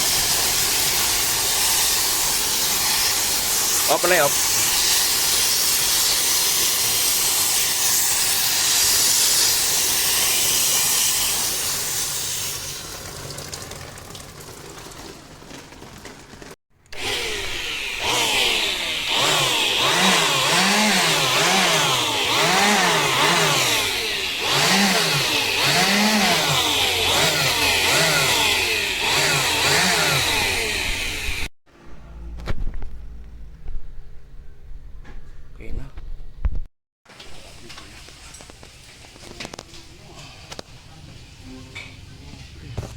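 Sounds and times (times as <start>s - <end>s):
water spray hissing: 0.0s - 12.8s.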